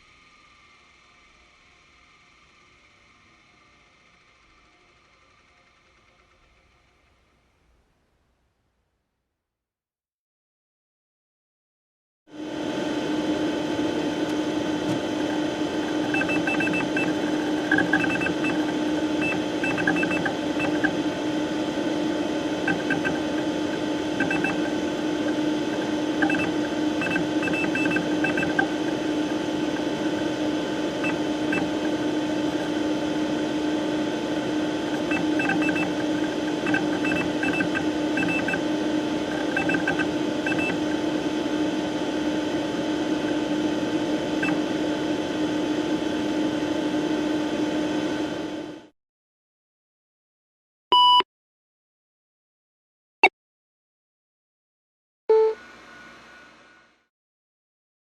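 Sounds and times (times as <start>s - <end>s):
computer fan hum: 12.3s - 48.9s.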